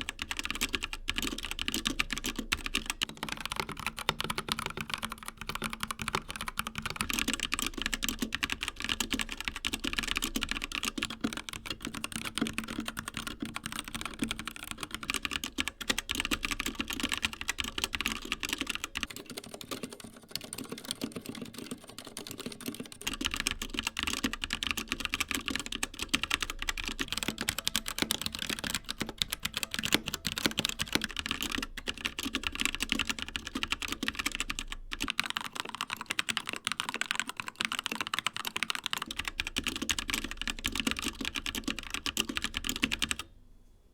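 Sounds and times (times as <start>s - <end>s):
fast typing on mechanical keyboards: 0.0s - 43.3s.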